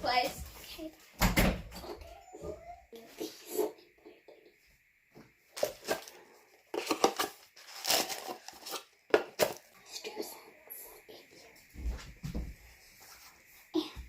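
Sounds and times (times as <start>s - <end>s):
plastic bags crinkling: 6.8s - 8.8s.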